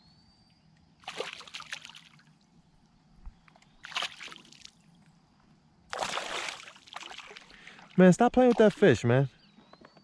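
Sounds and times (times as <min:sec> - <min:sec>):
water splashing and sloshing: 0:01.0 - 0:02.6, 0:03.8 - 0:05.1, 0:05.8 - 0:09.0.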